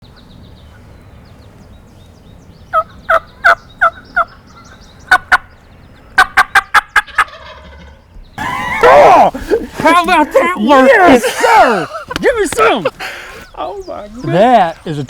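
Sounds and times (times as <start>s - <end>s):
wild turkey yelping: 2.7s - 5.5s, 6.2s - 9.2s.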